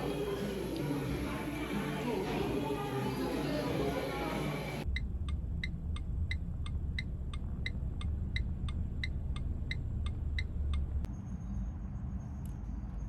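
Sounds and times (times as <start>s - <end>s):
turn signal ticking: 4.7s - 11.1s.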